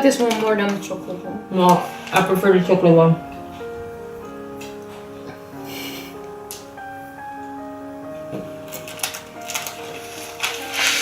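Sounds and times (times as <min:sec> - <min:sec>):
plucked string melody: 0:00.0 - 0:11.0
rustling noise: 0:08.2 - 0:11.0.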